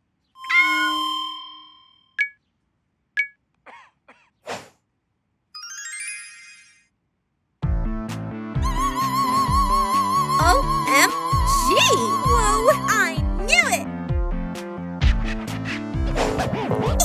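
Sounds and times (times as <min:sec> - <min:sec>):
rising sparkly chimes: 0:00.4 - 0:02.1, 0:05.6 - 0:06.9
bell-like ding: 0:00.4 - 0:02.3
short pings: 0:00.4 - 0:02.4
swish: 0:04.5 - 0:04.8, 0:15.0 - 0:17.0.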